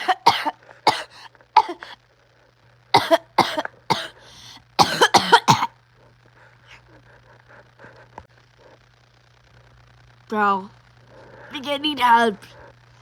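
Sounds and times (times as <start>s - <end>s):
person coughing: 0.0s - 2.0s, 3.0s - 4.2s, 4.8s - 5.7s.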